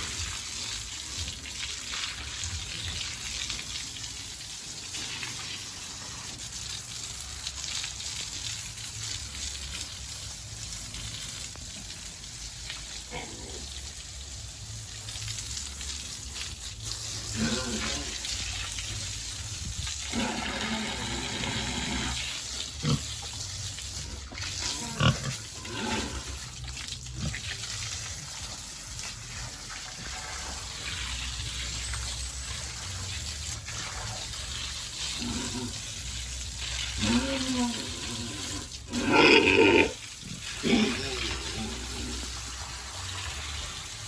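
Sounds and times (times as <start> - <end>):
running water: 0.0 - 44.0
pigs grunting and squealing: 13.0 - 14.0, 17.0 - 18.7, 20.0 - 27.8, 33.7 - 42.7.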